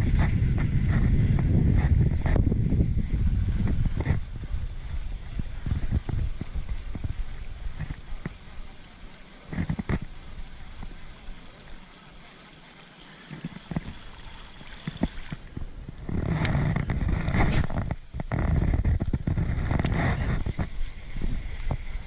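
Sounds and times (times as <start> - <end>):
wind buffeting microphone: 0.0 - 8.8, 13.6 - 22.0
water sloshing around kayak: 5.9 - 21.8.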